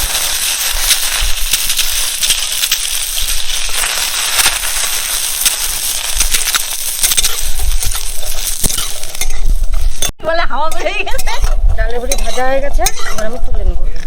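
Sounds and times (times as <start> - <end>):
dumplings sizzling in hot oil: 0.0 - 10.1
oil crackling and popping: 0.0 - 10.1.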